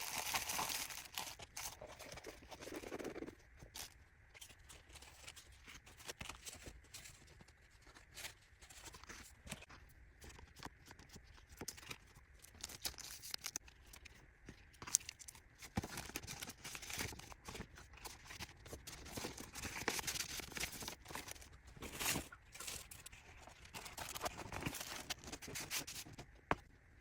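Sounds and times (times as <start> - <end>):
wrapping material crinkling: 0.0 - 3.2, 14.7 - 26.1.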